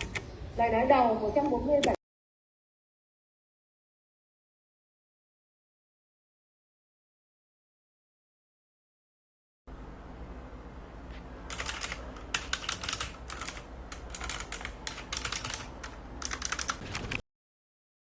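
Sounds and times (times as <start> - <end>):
typing on mechanical keyboard: 11.5 - 17.2.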